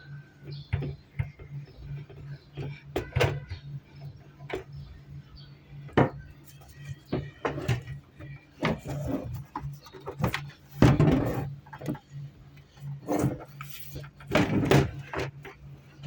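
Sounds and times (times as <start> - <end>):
steady low hum: 0.0 - 16.0
objects knocking and clattering: 5.9 - 12.1, 12.7 - 15.7.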